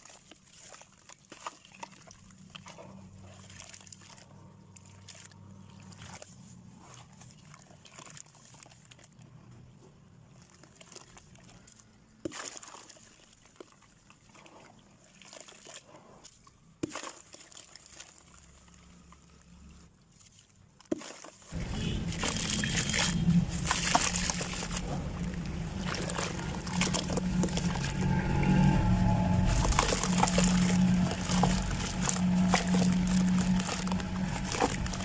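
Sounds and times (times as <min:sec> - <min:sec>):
dry sand crumbling: 0:21.6 - 0:35.0.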